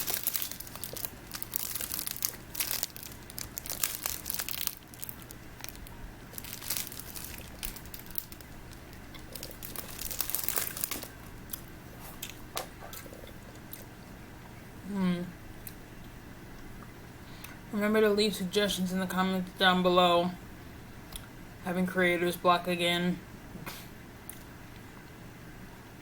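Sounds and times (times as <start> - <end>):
plastic wrapper crinkling: 0.0 - 11.7.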